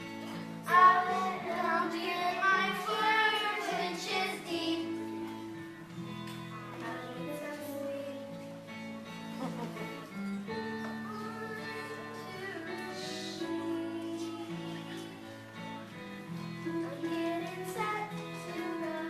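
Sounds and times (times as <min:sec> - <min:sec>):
children singing: 0:00.6 - 0:05.0, 0:11.0 - 0:15.4, 0:16.7 - 0:19.0.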